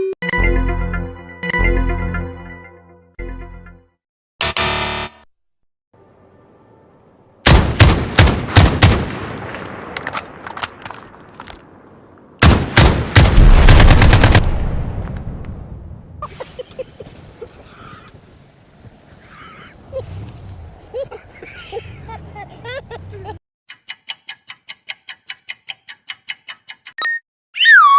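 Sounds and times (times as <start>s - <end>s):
rumble: 7.8s - 16.3s
rapid sharp bangs: 12.4s - 14.5s.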